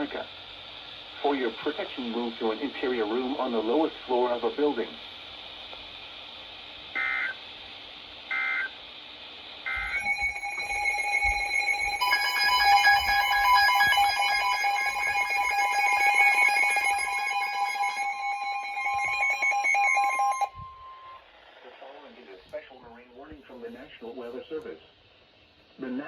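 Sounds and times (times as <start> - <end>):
digital data tone bursts: 7.0 - 7.4, 8.3 - 8.8, 9.6 - 21.2
pulsing electronic alert tone: 9.7 - 21.2.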